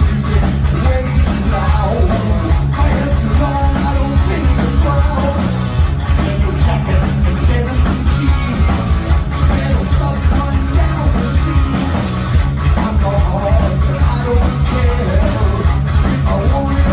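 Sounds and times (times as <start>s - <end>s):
bass guitar: 0.0s - 16.9s
drum kit beat: 0.0s - 16.9s
electric guitar: 0.0s - 16.9s.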